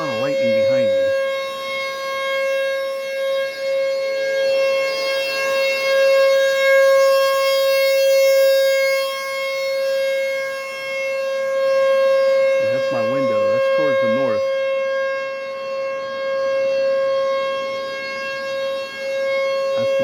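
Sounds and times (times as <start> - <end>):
outdoor warning siren: 0.0 - 20.0.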